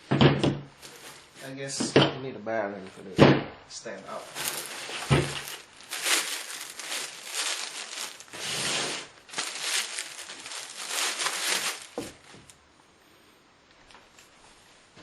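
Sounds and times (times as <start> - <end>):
packaging rustling and crinkling: 0.8 - 1.3, 4.1 - 12.6.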